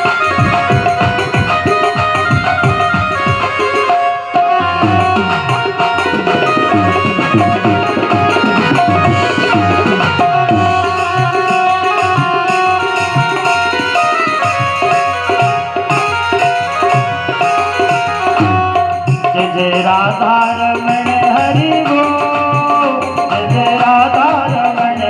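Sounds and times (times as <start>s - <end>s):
held melody notes: 0.0s - 19.2s
tabla playing: 0.0s - 25.0s.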